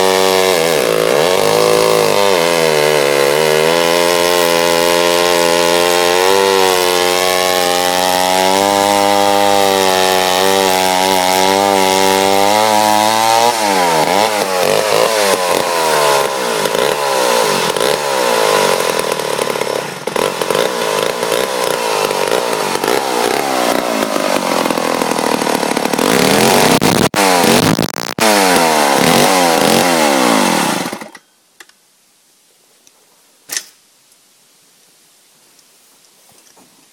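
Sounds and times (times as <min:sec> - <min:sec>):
chainsaw cutting wood: 0:00.0 - 0:31.3
sharp click: 0:33.5 - 0:33.8.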